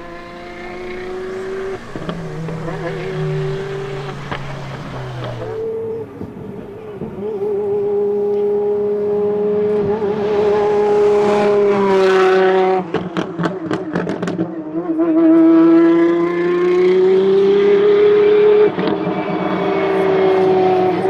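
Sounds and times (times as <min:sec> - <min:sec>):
exhaust crackles and pops: 0:00.0 - 0:08.6
car engine revving: 0:00.0 - 0:21.0.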